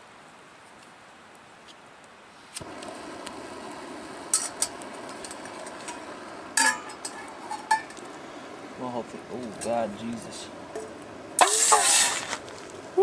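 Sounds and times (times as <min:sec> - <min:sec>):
camp stove burner rushing: 0:02.5 - 0:13.0
metal pot clinking: 0:06.6 - 0:08.0.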